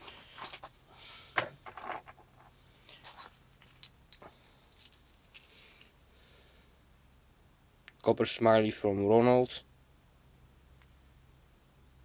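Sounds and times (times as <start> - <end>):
metal chain jingling: 0.0 - 2.1, 3.0 - 6.2.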